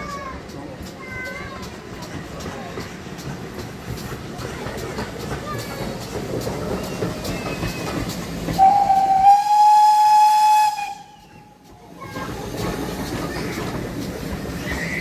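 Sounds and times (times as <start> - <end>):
train rumbling and clicking on rails: 0.0 - 15.0
steam locomotive whistle: 8.6 - 11.4.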